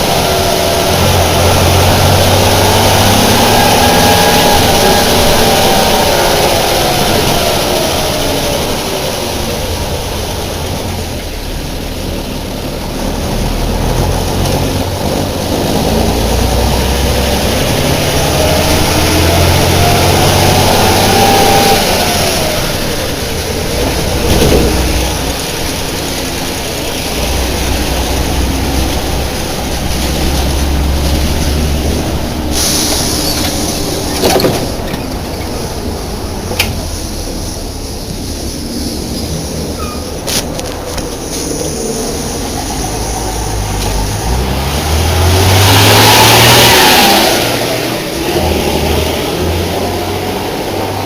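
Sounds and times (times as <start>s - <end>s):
bus diesel engine rumbling: 0.0s - 51.0s
engine whine: 0.0s - 51.0s.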